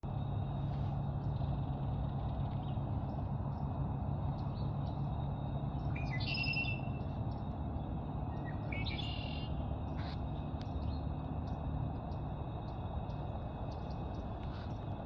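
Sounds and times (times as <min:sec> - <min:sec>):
bird song with buzzy trill: 0:05.8 - 0:09.6.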